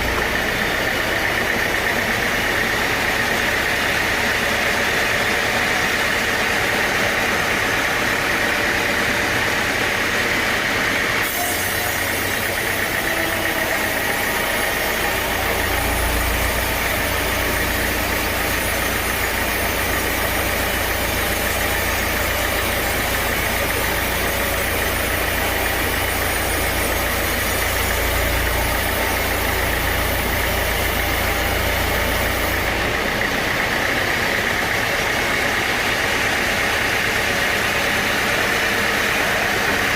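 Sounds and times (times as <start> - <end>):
sawmill machinery drone: 0.0 - 39.9
hiss: 11.2 - 32.8.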